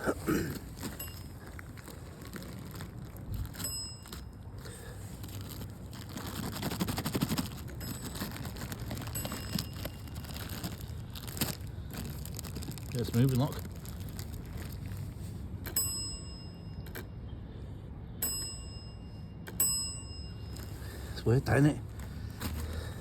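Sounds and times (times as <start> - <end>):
muffled telephone bell ringing: 3.6 - 4.3, 15.6 - 17.2, 18.2 - 20.8.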